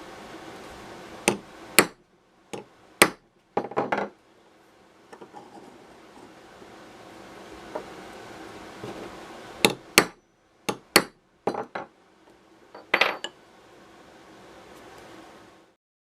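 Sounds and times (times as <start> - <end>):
hammer tapping steel punch: 1.3 - 4.0, 9.6 - 11.9.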